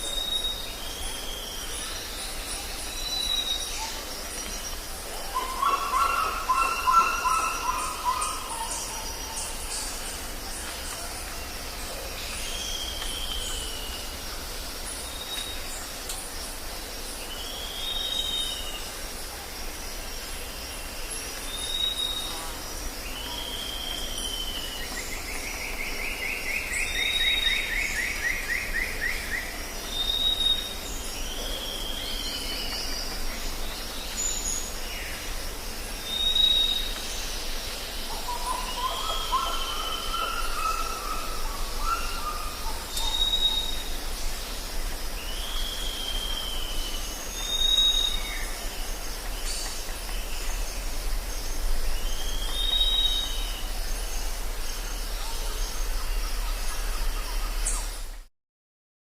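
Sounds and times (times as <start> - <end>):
birds calling and whistling: 0.0 - 14.2, 36.0 - 58.2
high drone of insects: 0.0 - 58.3.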